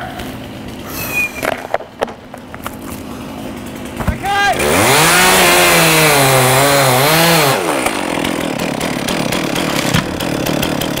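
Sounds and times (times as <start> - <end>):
rough noise: 0.0 - 6.2
chainsaw cutting wood: 0.0 - 11.0.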